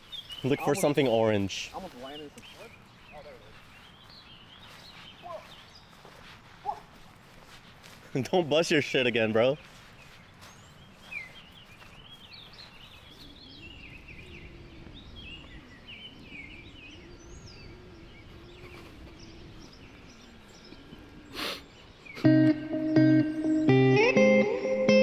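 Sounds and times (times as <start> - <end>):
birds chirping and singing: 0.0 - 25.0
guitar music: 22.2 - 25.0.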